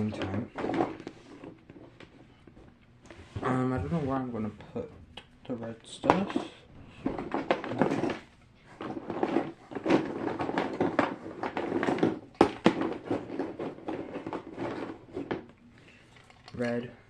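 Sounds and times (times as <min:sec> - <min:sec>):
plastic toys clicking and crinkling: 0:00.0 - 0:02.2, 0:05.8 - 0:16.9.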